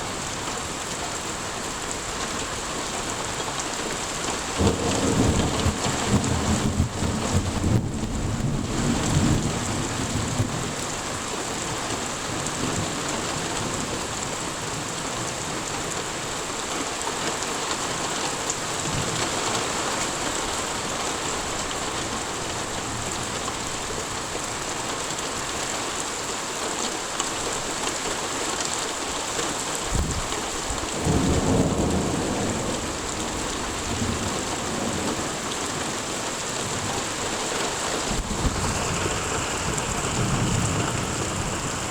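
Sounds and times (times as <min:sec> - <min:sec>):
steady rain falling: 0:00.0 - 0:41.9
low rumbles of thunder: 0:04.6 - 0:11.2, 0:30.0 - 0:41.9.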